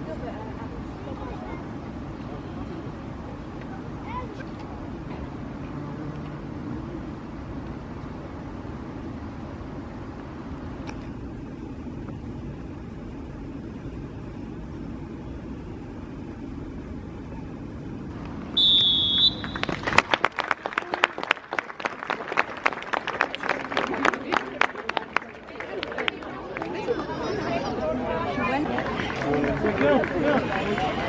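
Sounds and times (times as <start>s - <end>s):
referee's whistle blast: 18.6s - 19.8s
spectators clapping: 19.2s - 27.2s, 28.3s - 31.0s.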